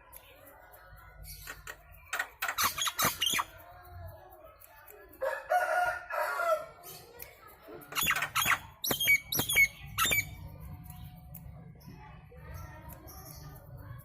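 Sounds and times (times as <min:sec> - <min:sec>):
starling sharp calls: 0:01.2 - 0:03.6, 0:07.9 - 0:10.4.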